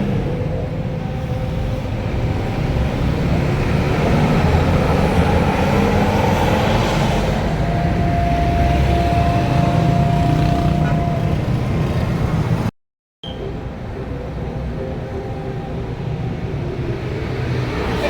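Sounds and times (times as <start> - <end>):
diesel bus engine rumble: 0.0 - 12.7.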